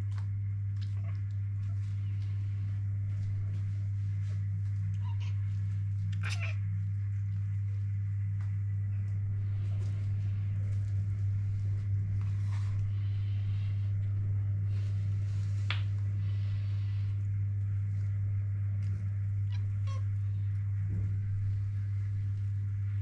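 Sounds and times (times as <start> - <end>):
steady low hum: 0.0 - 23.0
cat calling: 5.0 - 5.5, 6.1 - 6.6, 19.5 - 20.2.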